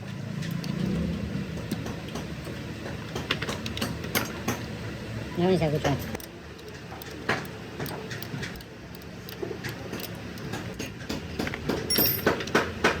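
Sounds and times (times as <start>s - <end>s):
mechanical clicks and metal knocks: 5.8s - 13.0s.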